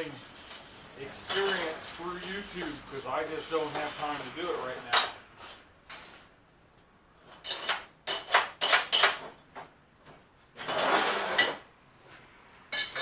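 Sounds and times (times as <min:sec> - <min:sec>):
metal tools clanking and rattling: 0:12.7 - 0:13.0.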